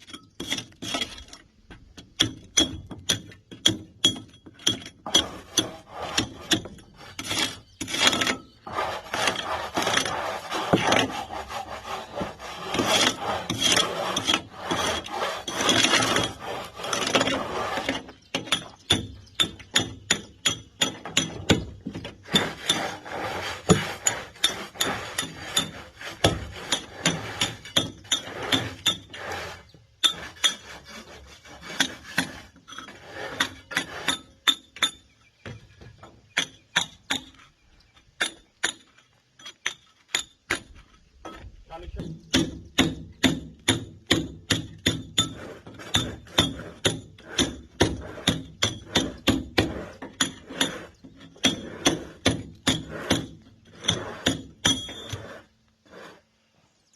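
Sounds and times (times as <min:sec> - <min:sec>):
continuous scraping: 0:00.0 - 0:56.9
hammer striking steel chisel: 0:42.3 - 0:55.2.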